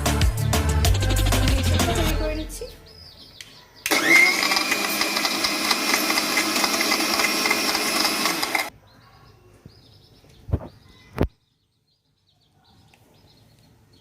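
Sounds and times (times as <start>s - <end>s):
blender motor running: 3.9s - 8.7s.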